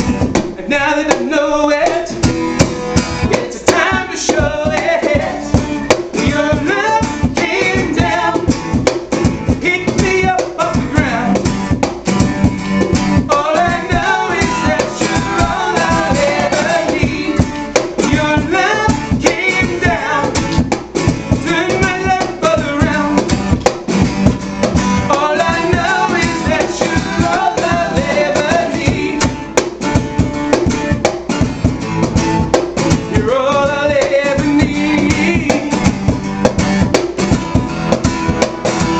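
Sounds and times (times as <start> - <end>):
cajon beat: 0.0 - 38.9
strummed acoustic guitar: 0.0 - 38.9
person singing: 0.4 - 2.3, 3.2 - 8.7, 9.5 - 11.4, 13.2 - 20.7, 21.3 - 23.3, 25.0 - 29.6, 33.0 - 36.2.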